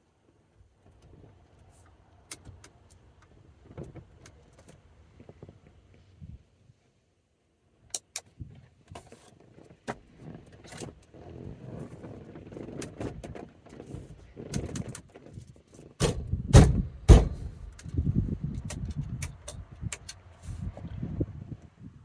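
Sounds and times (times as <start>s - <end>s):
parts and tools clicking and rattling: 14.4s - 15.2s, 16.0s - 20.4s
heavy thumps: 16.0s - 18.0s.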